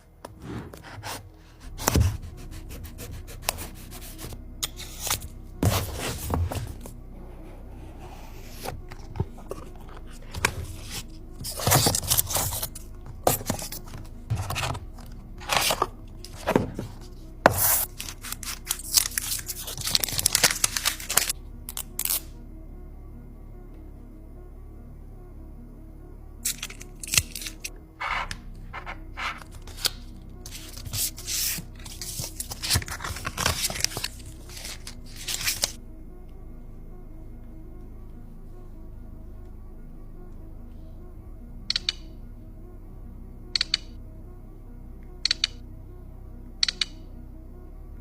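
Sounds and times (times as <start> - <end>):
background music: 0.0 - 48.0
cardboard scraping: 0.3 - 6.9, 8.0 - 21.3, 28.0 - 35.7
plastic wrap tearing and crinkling: 17.9 - 22.2, 29.6 - 35.8.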